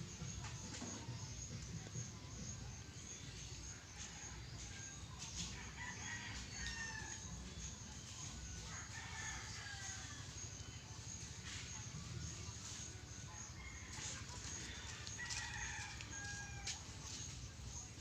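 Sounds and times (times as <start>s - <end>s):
rooster crowing: 5.6s - 7.3s, 8.6s - 10.3s, 13.3s - 16.9s.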